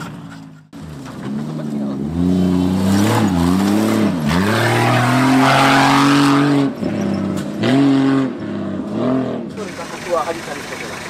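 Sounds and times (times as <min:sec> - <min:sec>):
engine revving hard: 0:01.4 - 0:10.0.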